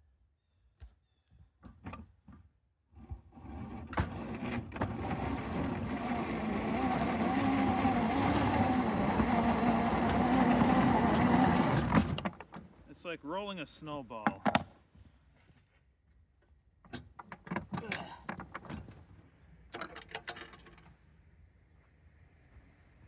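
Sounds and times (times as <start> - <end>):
model locomotive motor whine: 3.4 - 12.4.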